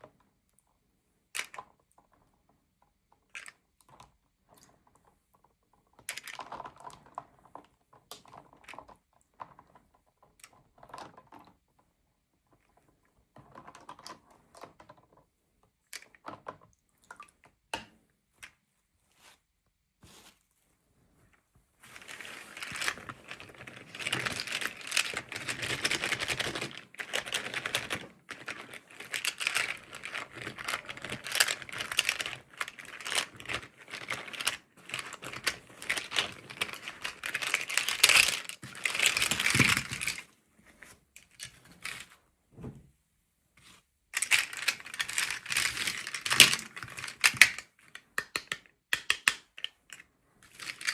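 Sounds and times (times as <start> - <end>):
plastic wrapping crinkling: 21.8 - 40.3, 44.2 - 47.6
packaging clicks and rustles: 21.9 - 40.3, 44.2 - 48.6, 50.5 - 50.9.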